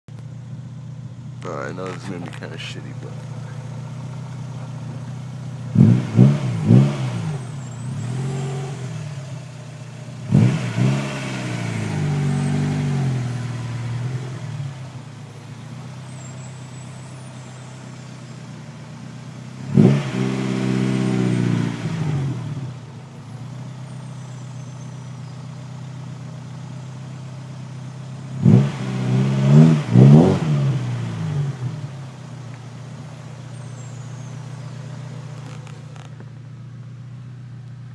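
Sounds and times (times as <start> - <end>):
engine hum: 0.1 - 37.9
vehicle squealing: 1.4 - 18.7, 20.8 - 26.2, 32.9 - 36.4.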